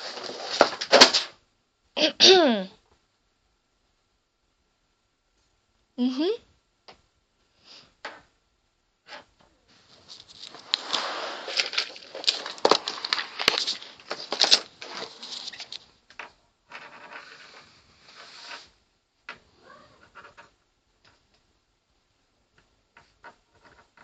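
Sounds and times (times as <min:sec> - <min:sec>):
pencil clattering on hard surface: 0:10.0 - 0:17.7, 0:22.9 - 0:24.0.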